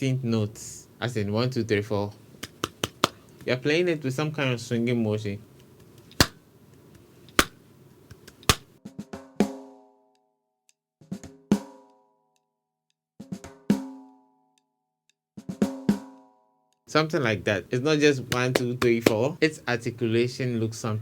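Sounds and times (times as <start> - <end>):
drum kit chop: 7.4 - 7.6, 8.4 - 9.6, 15.4 - 16.2, 18.1 - 19.4.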